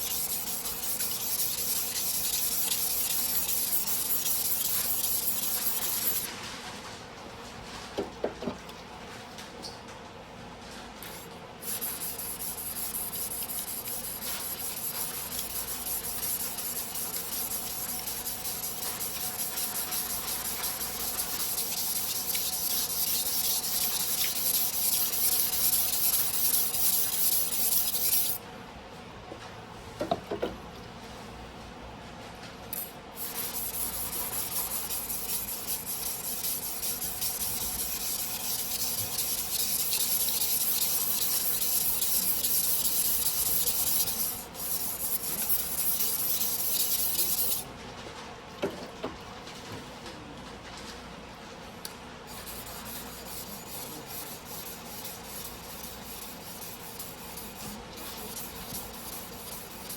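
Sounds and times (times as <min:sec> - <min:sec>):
knife scraping on whetstone: 0:00.0 - 0:06.3, 0:11.6 - 0:28.4, 0:33.2 - 0:47.6, 0:52.4 - 0:59.9.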